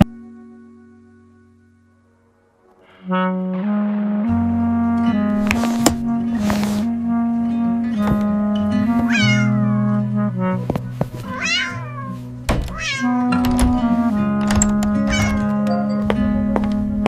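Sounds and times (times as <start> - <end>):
background music: 0.0 - 17.0
cat meowing: 9.0 - 9.9, 11.2 - 13.2, 15.1 - 15.6.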